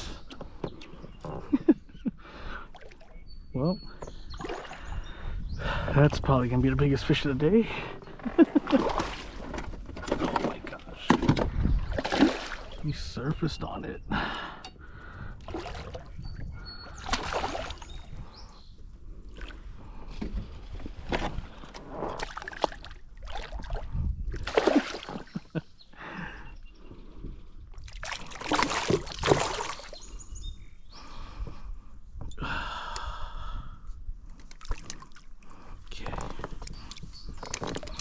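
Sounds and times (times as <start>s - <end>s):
water splashing around boat: 7.9s - 13.2s, 15.4s - 16.2s, 16.9s - 18.3s, 19.2s - 25.6s, 27.8s - 30.2s, 34.4s - 38.0s
person breathing heavily and gasping: 14.1s - 15.4s, 25.9s - 27.2s, 30.9s - 34.0s.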